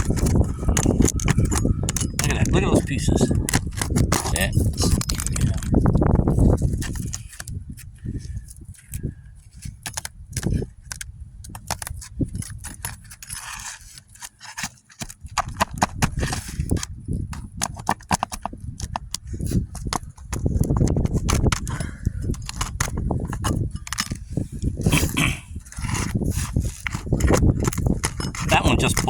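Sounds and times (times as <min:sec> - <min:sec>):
hand tools clicking and scraping: 0:00.0 - 0:29.0
brittle shingles tearing: 0:09.6 - 0:21.7.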